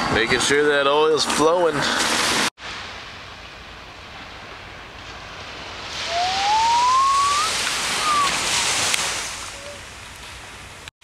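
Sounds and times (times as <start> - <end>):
rushing beach noise: 1.8 - 10.9
rising whistle-like tone: 6.1 - 8.8.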